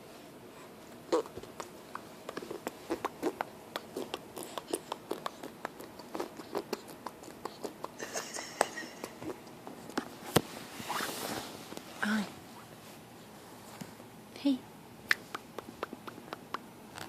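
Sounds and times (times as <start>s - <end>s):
baby clicking and smacking mouth: 1.2s - 8.0s, 15.1s - 17.0s.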